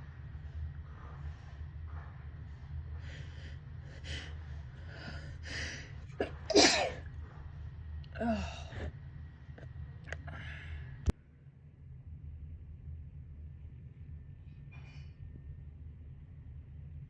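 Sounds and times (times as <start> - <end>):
gasping in-breaths: 3.0 - 7.0, 8.2 - 8.9
person sneezing: 6.2 - 7.0.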